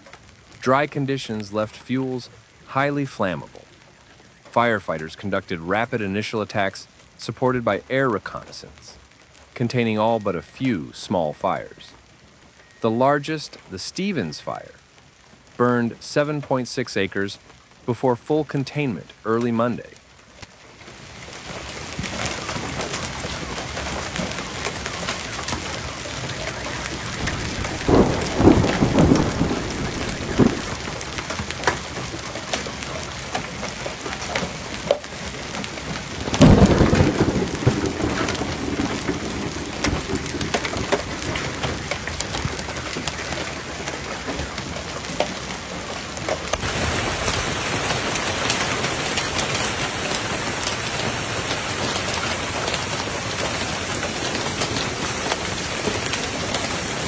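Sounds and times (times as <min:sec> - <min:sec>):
heavy rain pounding: 0:20.7 - 0:57.0
thunder rumbling: 0:23.2 - 0:32.0, 0:36.0 - 0:43.4.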